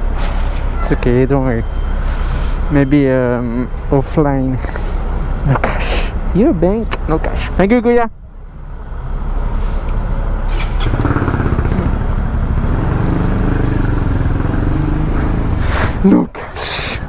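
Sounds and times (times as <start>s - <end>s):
motorcycle engine riding off: 10.5s - 15.6s.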